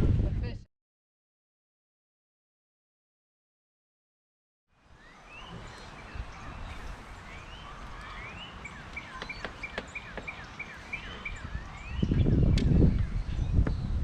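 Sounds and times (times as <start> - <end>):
songbird singing: 4.7 - 14.0
steady background noise: 4.8 - 12.6.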